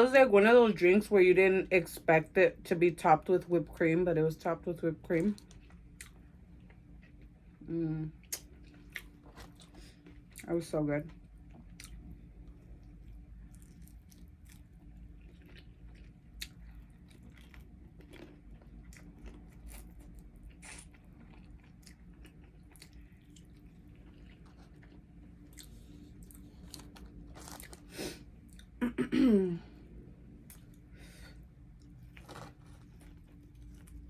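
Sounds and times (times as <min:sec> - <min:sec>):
person chewing food: 0:05.4 - 0:07.6, 0:08.2 - 0:10.4, 0:11.3 - 0:28.8, 0:30.2 - 0:34.0.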